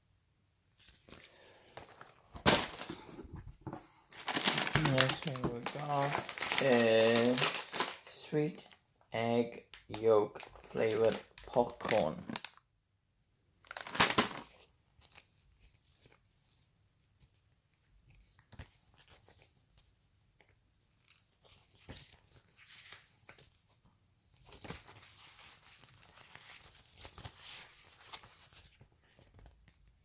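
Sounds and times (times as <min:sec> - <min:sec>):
snack packaging rustling: 0:04.0 - 0:08.8, 0:10.0 - 0:12.6, 0:13.6 - 0:15.3.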